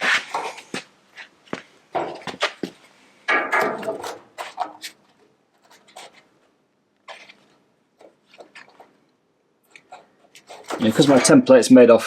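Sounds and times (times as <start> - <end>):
sheet metal scraping: 3.2 - 9.0, 9.6 - 11.7.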